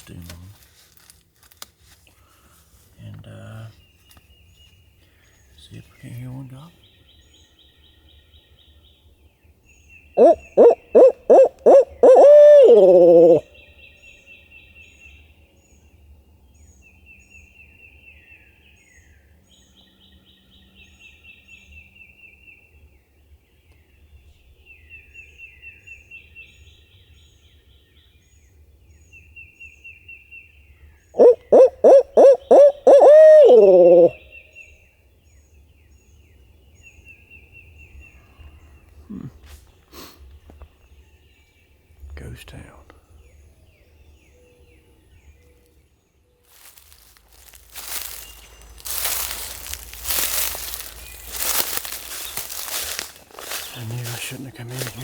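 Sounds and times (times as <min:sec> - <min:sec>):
owl call hoots: 0:10.2 - 0:13.5, 0:31.2 - 0:34.3, 0:46.5 - 0:55.0.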